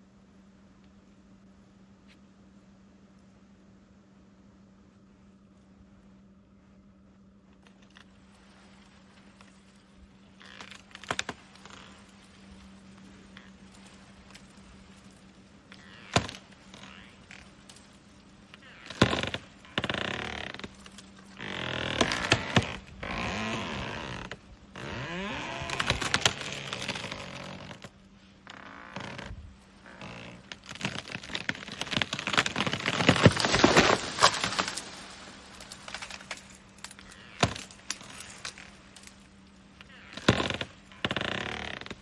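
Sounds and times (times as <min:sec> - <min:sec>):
leaves and stalks rustling: 0:02.0 - 0:42.0
stems snapping: 0:10.4 - 0:27.9, 0:28.5 - 0:39.2, 0:39.8 - 0:42.0.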